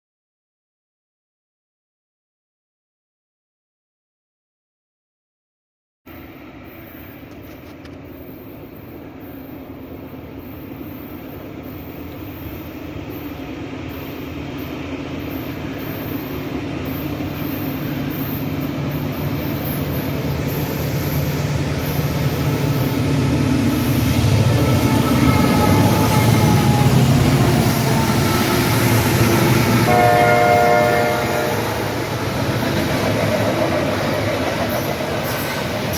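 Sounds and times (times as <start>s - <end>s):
diesel locomotives approaching: 6.1s - 35.9s
train horn: 24.5s - 32.2s.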